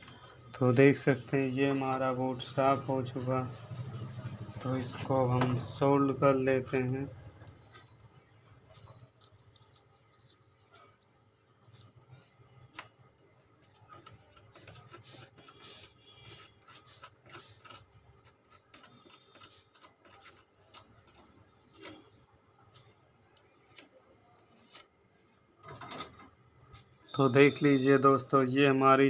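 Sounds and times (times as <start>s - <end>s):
small tools clicking and tapping: 5.3s - 11.1s, 13.6s - 24.9s.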